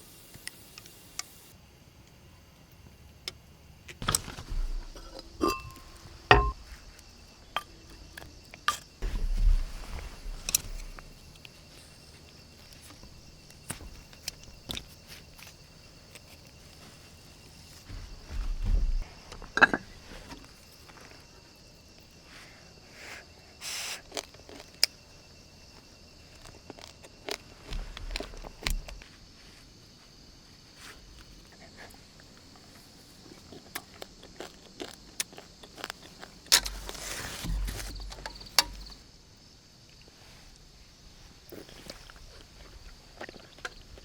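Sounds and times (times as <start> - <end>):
insects chirring: 0.0 - 44.0
rustling: 9.0 - 21.3.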